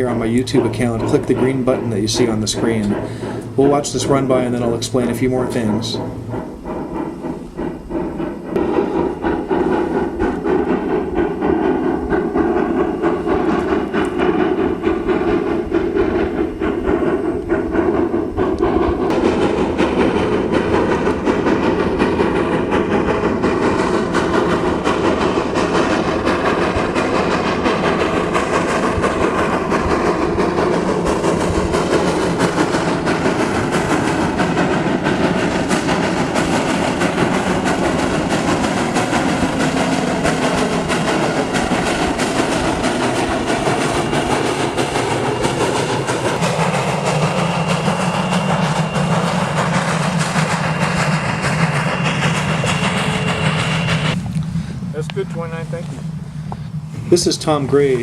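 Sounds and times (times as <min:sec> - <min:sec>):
wheels clicking over rail joints: 0:00.0 - 0:53.6
steam locomotive exhaust chuffing: 0:00.0 - 0:58.0.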